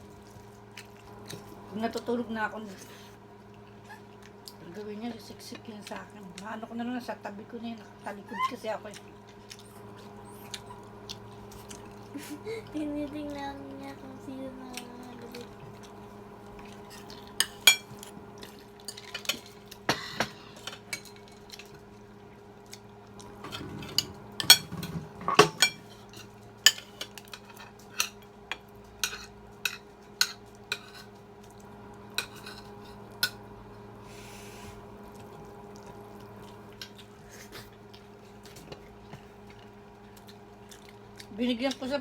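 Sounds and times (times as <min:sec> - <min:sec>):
faint steady hum: 0:00.0 - 0:42.0
cutlery clinking on plates: 0:16.9 - 0:18.0, 0:23.4 - 0:28.2.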